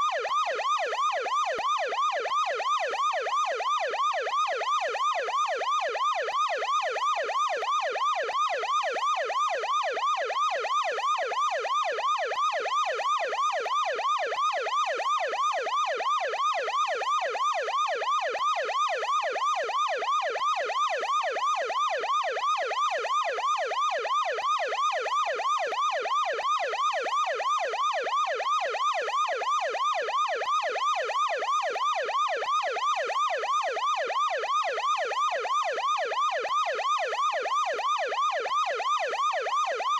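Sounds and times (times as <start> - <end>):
ambulance yelp siren: 0.0 - 39.9.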